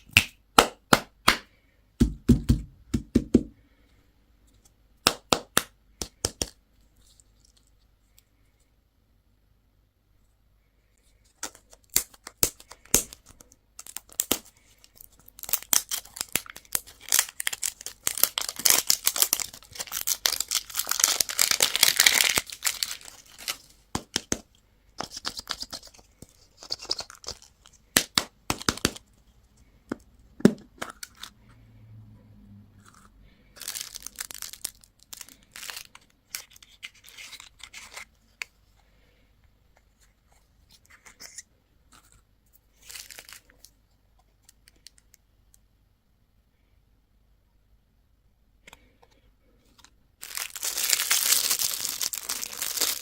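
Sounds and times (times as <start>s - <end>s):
plastic packaging crinkling: 11.4s - 24.3s, 25.0s - 29.0s, 33.6s - 38.1s, 42.8s - 43.7s, 49.8s - 53.0s.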